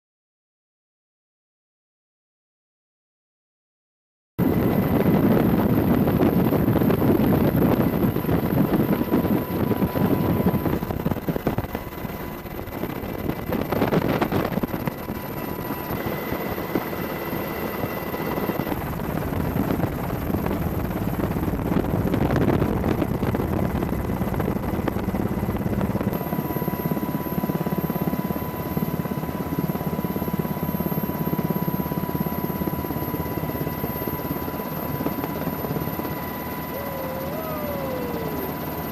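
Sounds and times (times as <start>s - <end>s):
helicopter rotor chop: 4.4s - 26.4s, 36.5s - 38.9s
faint steady whine: 4.4s - 38.9s.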